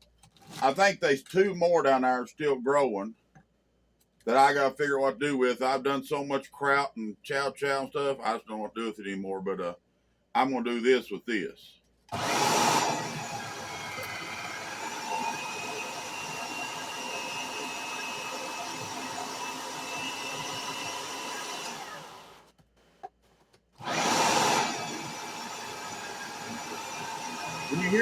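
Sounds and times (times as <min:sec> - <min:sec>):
electric shredder motor running: 0:12.1 - 0:22.5, 0:23.8 - 0:28.0.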